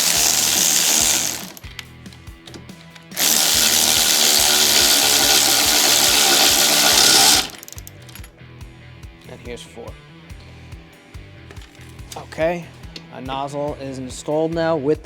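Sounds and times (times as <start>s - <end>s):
power tool spinning a socket: 0.0s - 1.9s, 3.2s - 8.2s.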